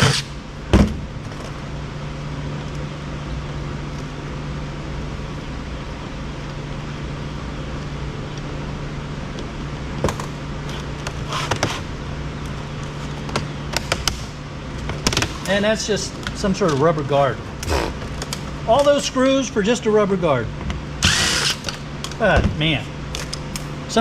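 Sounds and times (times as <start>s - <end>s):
low machine hum: 0.0s - 24.0s.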